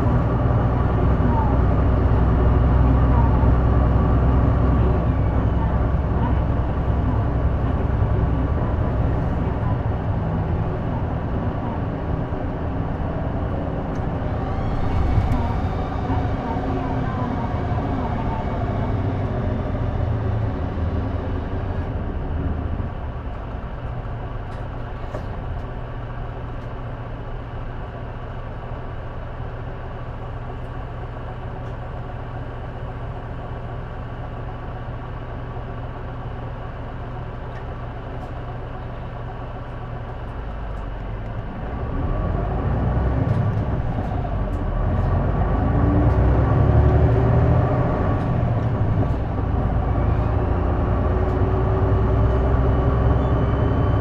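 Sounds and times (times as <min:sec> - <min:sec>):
bus diesel engine: 0:00.0 - 0:54.0.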